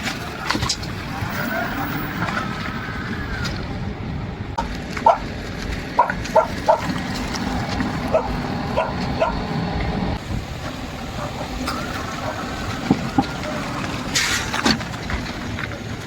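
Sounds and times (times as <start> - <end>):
electric vehicle low rumble: 0.0 - 16.0
dog barking: 5.0 - 5.3, 6.0 - 7.0, 8.1 - 9.5, 10.6 - 12.5.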